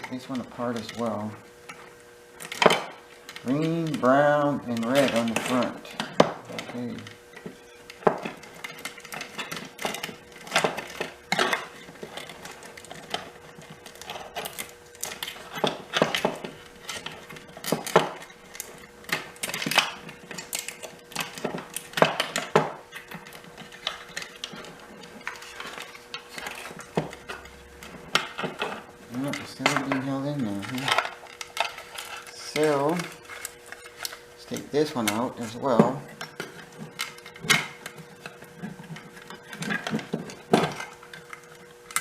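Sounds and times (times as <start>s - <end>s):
hand tools clinking on metal parts: 2.4s - 42.0s.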